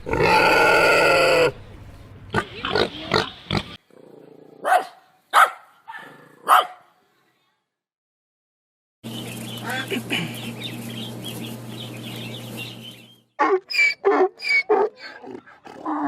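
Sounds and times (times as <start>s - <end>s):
steady low hum: 9.1s - 13.2s.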